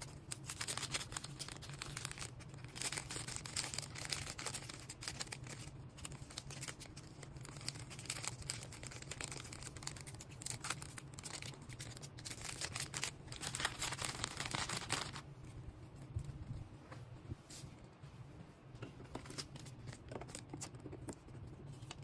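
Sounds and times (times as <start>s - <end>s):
plastic packaging crinkling: 0.0s - 15.2s
plastic tearing: 0.0s - 15.2s
low steady hum: 0.0s - 22.0s.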